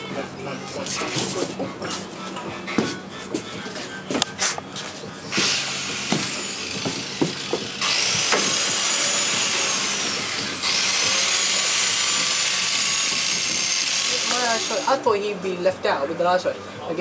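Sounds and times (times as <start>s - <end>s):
power tool whining: 5.2s - 15.1s
knocks: 6.1s - 8.9s.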